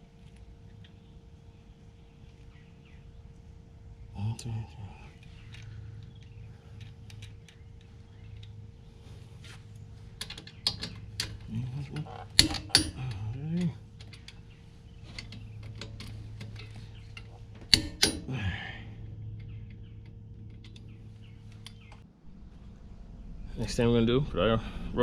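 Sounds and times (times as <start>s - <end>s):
steady low hum: 0.0s - 25.0s
metal tools clanking: 10.1s - 22.0s
sharp metal knocks: 12.3s - 13.2s, 17.2s - 18.3s.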